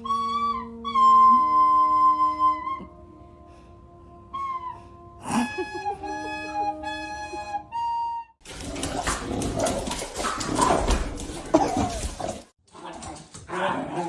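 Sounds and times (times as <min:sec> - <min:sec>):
flute-like tune: 0:00.0 - 0:08.4.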